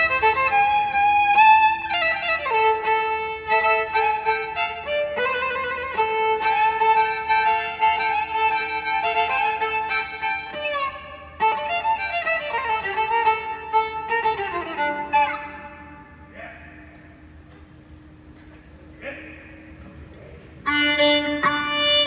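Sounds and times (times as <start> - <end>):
violin melody: 0.0 - 16.1, 20.6 - 22.0.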